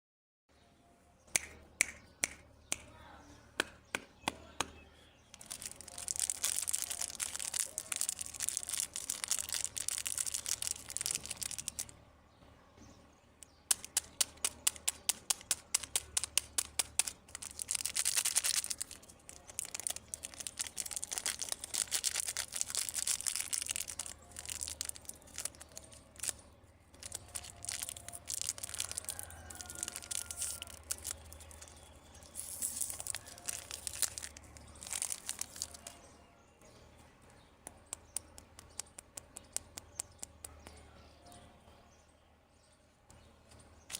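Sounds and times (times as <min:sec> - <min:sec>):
wrapper crinkling and tearing: 0:05.3 - 0:11.9, 0:13.7 - 0:36.1.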